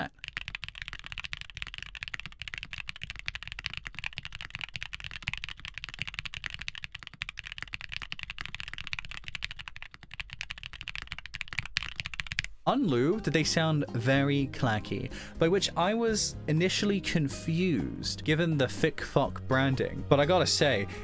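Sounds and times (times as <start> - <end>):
fast mechanical keyboard typing: 0.0 - 12.6.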